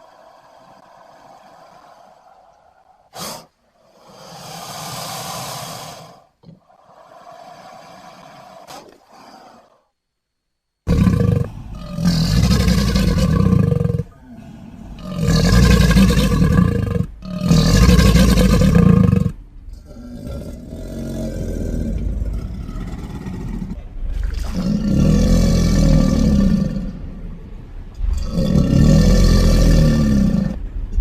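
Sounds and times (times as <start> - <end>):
crocodilian deep bellows: 10.9 - 31.0.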